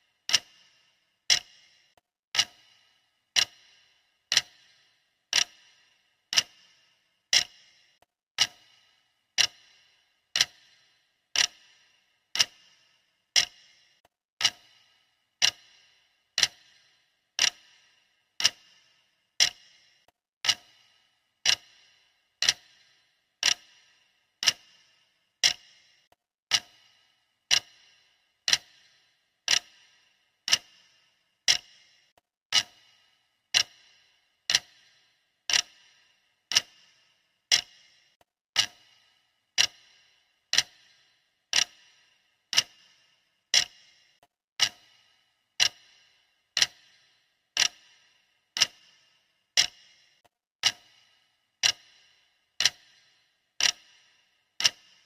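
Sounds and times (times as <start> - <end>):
clock ticking with metallic ring: 0.0 - 55.0.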